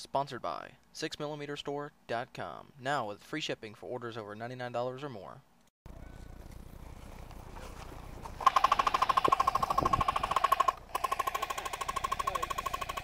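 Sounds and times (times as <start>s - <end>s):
motor gearbox whine: 8.4s - 13.0s
toy gun rapid shots: 8.4s - 13.0s.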